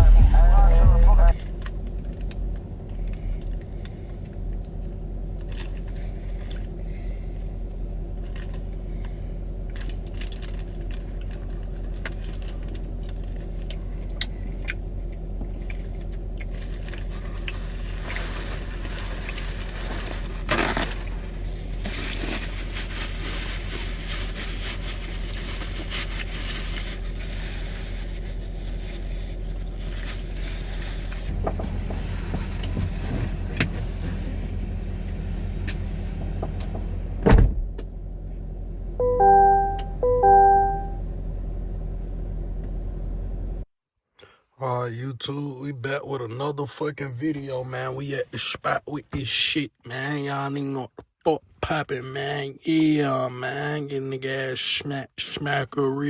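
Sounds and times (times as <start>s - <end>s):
car engine idling: 0.0s - 20.2s, 26.4s - 43.6s.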